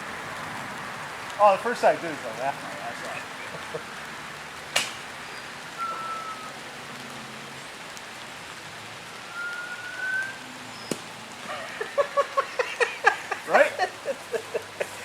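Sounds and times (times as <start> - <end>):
steady hiss: 0.0 - 15.0
sharp snap: 4.7 - 5.0
whistle arrow whistling: 5.8 - 6.6, 9.2 - 11.0.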